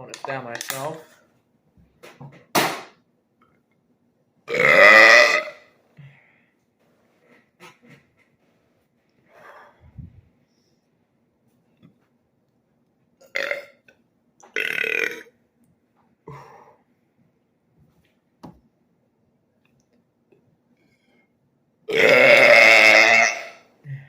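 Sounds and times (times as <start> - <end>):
man burping: 4.5 - 5.7, 13.2 - 13.8, 14.5 - 15.3, 21.9 - 23.7.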